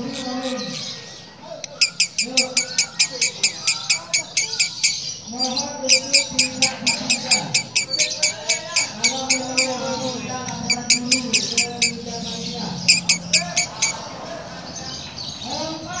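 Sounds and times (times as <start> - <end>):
lovebird harsh cackle: 1.7 - 9.9, 10.5 - 12.0, 12.9 - 14.0.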